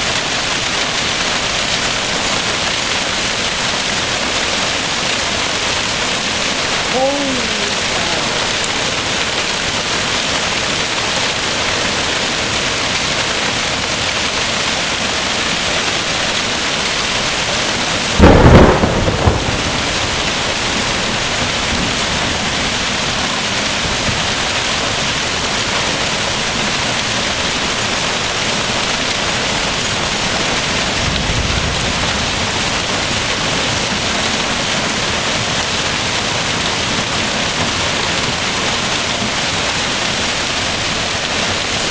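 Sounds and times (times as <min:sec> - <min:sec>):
hail and heavy rain pelting: 0:00.0 - 0:41.9
loud thunder crack: 0:18.1 - 0:22.0
low thunder rumble: 0:18.1 - 0:23.0.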